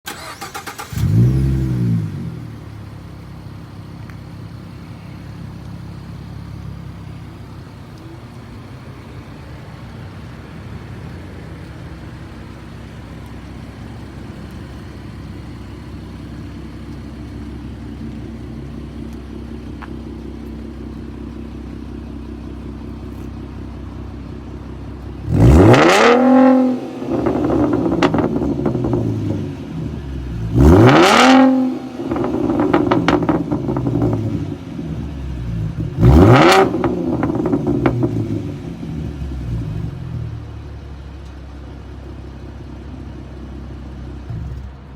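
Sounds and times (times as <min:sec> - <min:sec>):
car engine revving: 0:00.1 - 0:03.2, 0:24.6 - 0:40.5
car engine idling: 0:00.1 - 0:44.9
exhaust crackles and pops: 0:00.8 - 0:42.3, 0:42.9 - 0:44.9.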